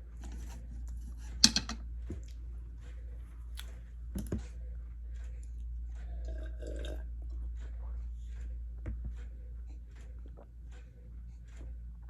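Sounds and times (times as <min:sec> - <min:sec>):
chewing: 0:02.2 - 0:11.8.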